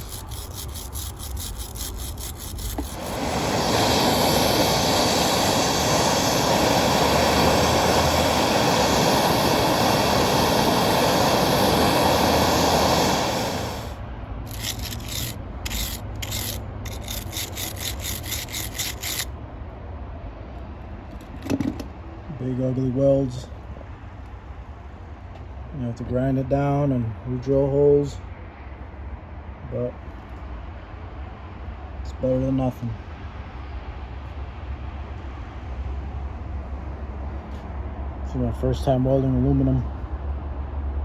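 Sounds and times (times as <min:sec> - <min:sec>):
short scratching noises: 0:00.0 - 0:03.3, 0:14.5 - 0:19.3.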